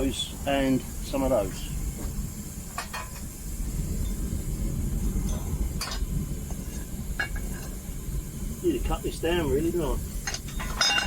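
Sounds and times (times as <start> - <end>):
burner rumbling and hissing: 0.0 - 11.0
light metal clinks: 10.2 - 11.0.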